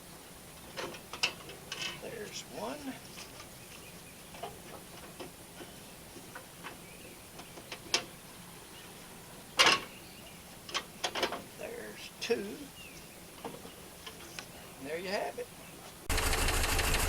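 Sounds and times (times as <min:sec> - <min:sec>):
hand tools clicking on metal: 0:00.6 - 0:03.5.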